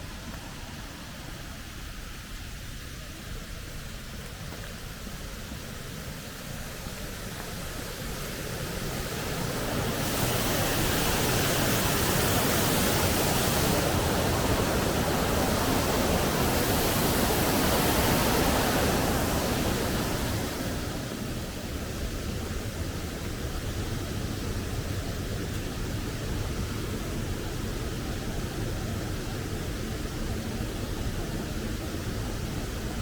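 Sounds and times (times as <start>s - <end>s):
steady rushing noise: 7.5s - 33.0s.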